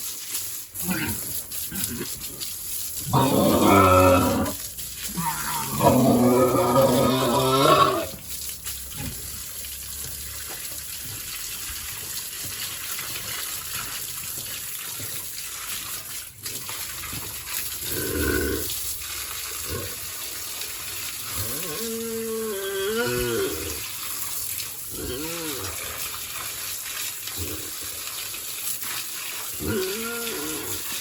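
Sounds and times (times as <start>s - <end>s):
water spraying from a hose: 0.0s - 31.0s
pig squealing: 3.1s - 4.6s, 5.2s - 8.2s, 21.4s - 23.8s.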